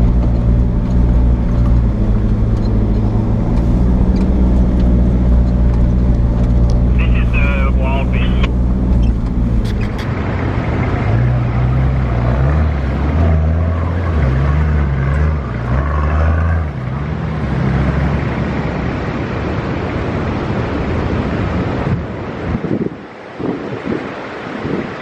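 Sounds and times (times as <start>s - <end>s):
vehicle engine revving: 0.0s - 19.8s
wind noise: 18.9s - 25.0s.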